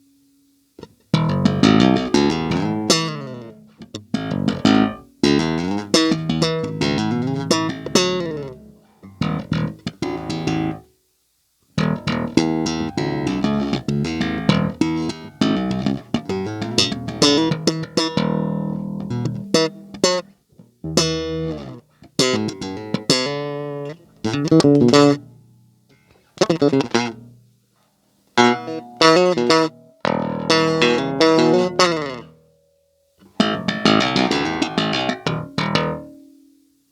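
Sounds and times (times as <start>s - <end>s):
bass guitar plucked notes: 1.1s - 10.8s, 11.8s - 20.2s, 20.8s - 25.3s, 28.4s - 32.3s, 33.3s - 36.2s.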